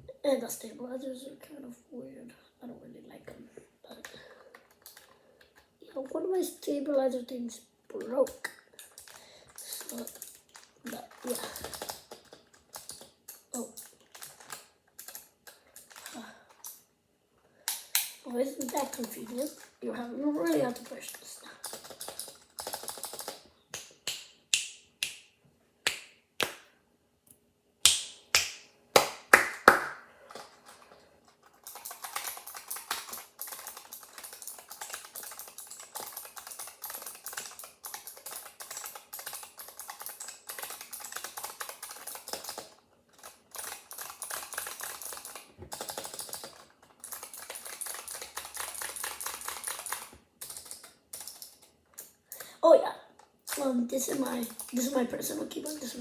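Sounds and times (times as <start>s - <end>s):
mechanical keyboard typing: 8.2s - 16.8s, 17.7s - 19.8s, 20.4s - 23.9s, 31.4s - 52.1s.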